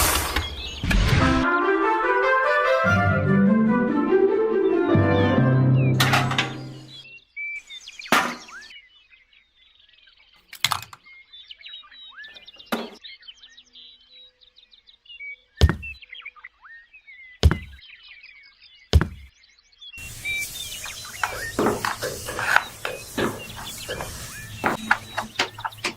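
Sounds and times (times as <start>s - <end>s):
birds chirping: 0.0s - 1.0s, 5.0s - 25.9s
sharp knocks: 15.6s - 16.0s, 17.4s - 17.8s, 19.0s - 19.3s, 21.0s - 25.9s.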